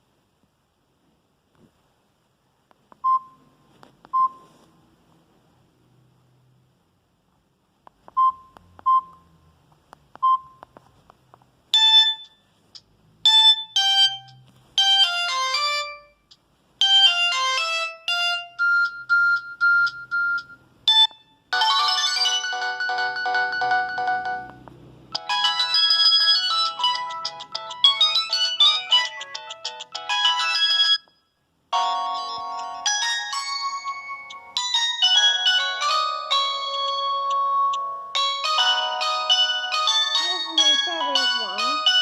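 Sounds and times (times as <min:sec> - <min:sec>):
short phone beeps: 0:04.2 - 0:04.5, 0:08.2 - 0:09.2
electronic ringtone melodies: 0:11.7 - 0:12.5, 0:13.2 - 0:24.6, 0:25.2 - 0:42.0.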